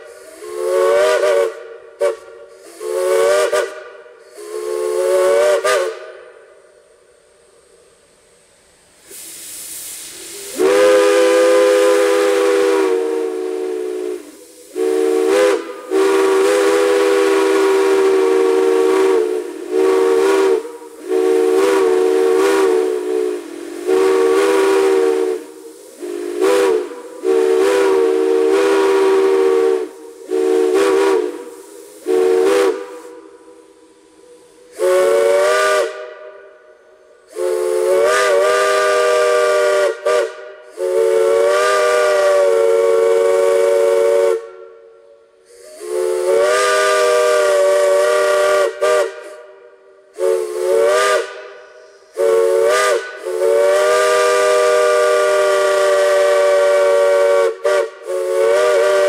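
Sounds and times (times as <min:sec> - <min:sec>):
chime steam whistle: 0:00.0 - 0:08.0, 0:10.1 - 0:59.0
steam hissing: 0:00.0 - 0:59.0.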